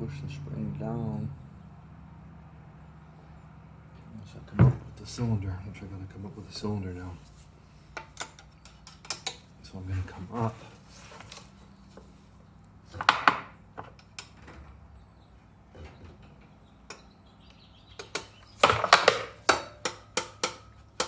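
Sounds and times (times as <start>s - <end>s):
metal tools clicking and tapping: 7.3s - 9.6s, 13.0s - 14.6s, 15.8s - 21.0s.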